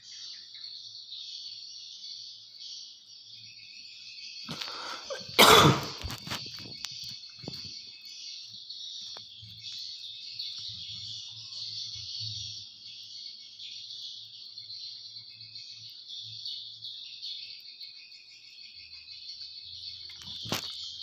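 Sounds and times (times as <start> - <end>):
high-pitched background hiss: 0.0 - 18.7
person coughing: 4.5 - 6.1.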